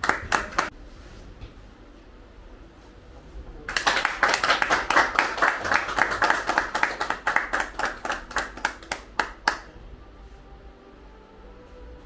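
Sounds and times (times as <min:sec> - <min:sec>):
people clapping: 0:00.0 - 0:00.7, 0:03.6 - 0:09.8.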